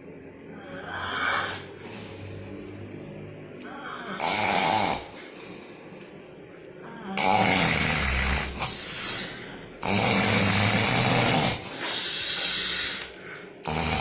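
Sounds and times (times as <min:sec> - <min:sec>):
person snoring loudly: 0:00.5 - 0:02.9, 0:03.6 - 0:05.2, 0:06.9 - 0:13.0, 0:13.6 - 0:14.0
breathy hissing: 0:06.8 - 0:14.0.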